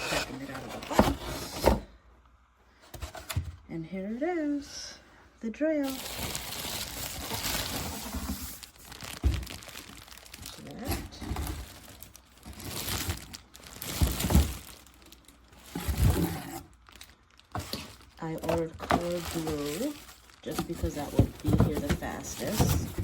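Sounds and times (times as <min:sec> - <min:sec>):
packaging crinkling: 0:05.9 - 0:23.0.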